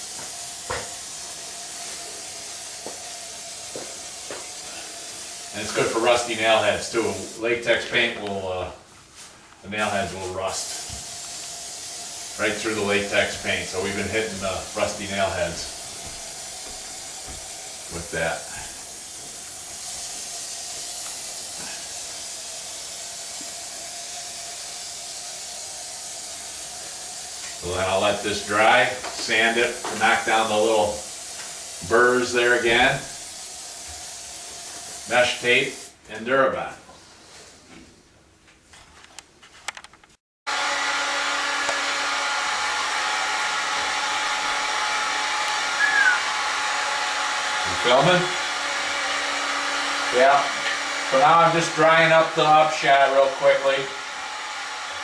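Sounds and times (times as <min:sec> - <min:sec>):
heat gun blowing: 0:00.0 - 0:07.3, 0:10.6 - 0:36.0, 0:40.5 - 0:55.0
aerosol can spraying: 0:00.0 - 0:07.4, 0:10.6 - 0:36.0.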